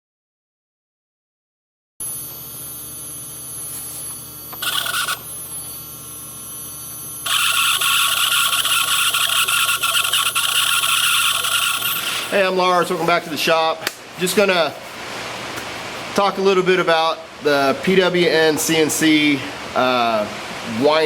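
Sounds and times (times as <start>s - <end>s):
router spindle high whine: 2.0s - 14.4s.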